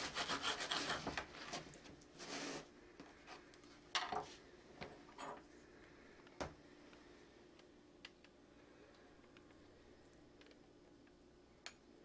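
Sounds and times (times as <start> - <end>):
knife scraping on bread: 0.0 - 1.6.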